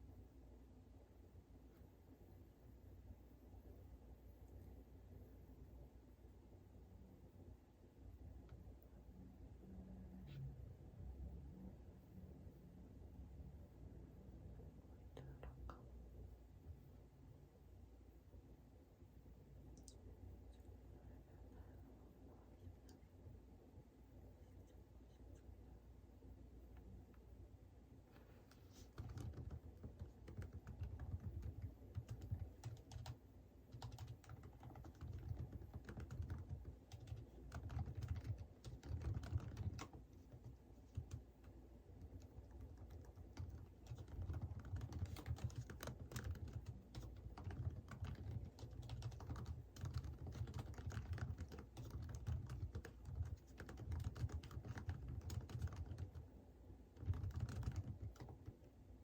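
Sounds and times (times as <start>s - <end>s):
computer keyboard typing: 28.5s - 56.3s, 56.9s - 58.7s.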